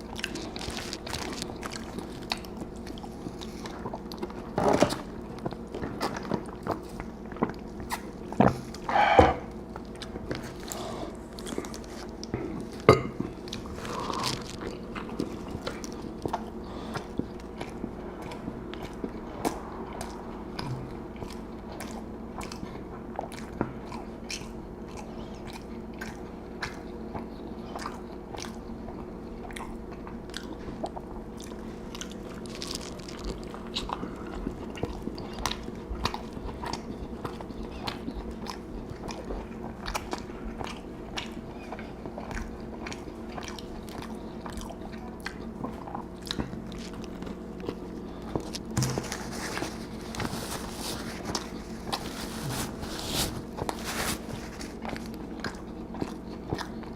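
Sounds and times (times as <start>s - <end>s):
chewing and crunching food: 0.0s - 56.9s
faint steady hum: 0.0s - 56.9s.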